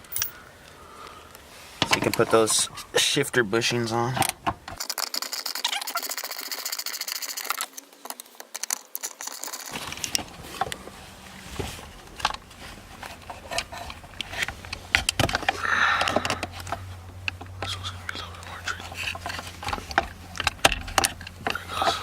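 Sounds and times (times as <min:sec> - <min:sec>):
metal parts clinking: 0:00.0 - 0:00.4.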